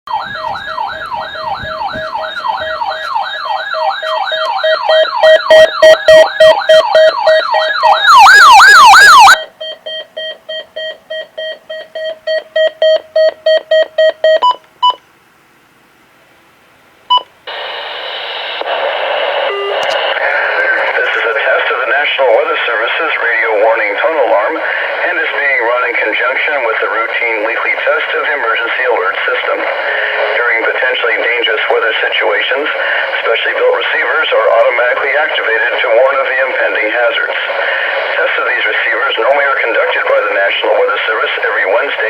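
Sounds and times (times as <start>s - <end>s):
radio static hiss: 0.1s - 3.2s, 17.5s - 42.0s
fast warbling siren: 0.1s - 9.4s
steady beeping: 0.1s - 9.4s.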